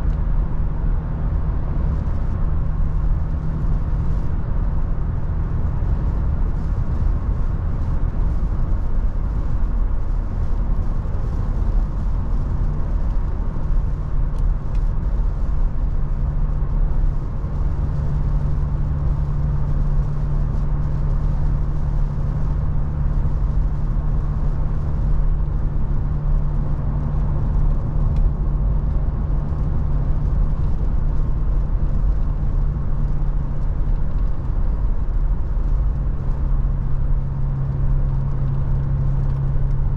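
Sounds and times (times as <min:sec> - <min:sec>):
engine hum: 0:00.0 - 0:39.9
road noise: 0:00.0 - 0:39.9.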